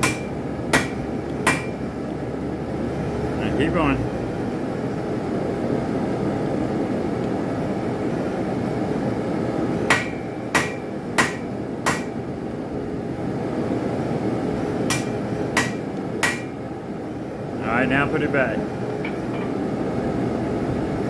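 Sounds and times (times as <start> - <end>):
hammer striking metal on anvil: 0.0 - 1.8, 9.9 - 12.2, 14.9 - 16.6.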